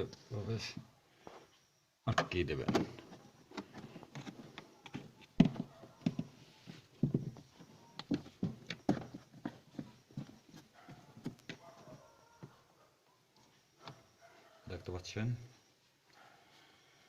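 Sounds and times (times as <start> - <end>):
fridge parts clicking and knocking: 2.1 - 6.3.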